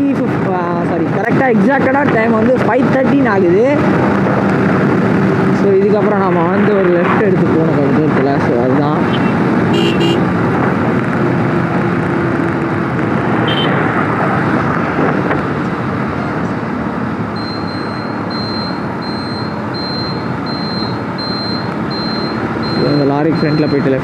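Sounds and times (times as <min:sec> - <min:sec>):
motorcycle wind and road noise: 0:00.0 - 0:24.0
high electronic beep: 0:17.4 - 0:24.0.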